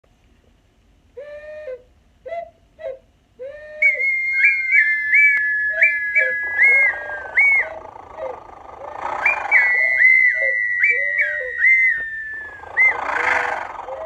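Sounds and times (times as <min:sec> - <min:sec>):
low whistled notes: 0:01.2 - 0:14.0
high whistle with upward flicks: 0:03.8 - 0:07.8, 0:09.2 - 0:13.0
steady hiss: 0:05.2 - 0:14.0.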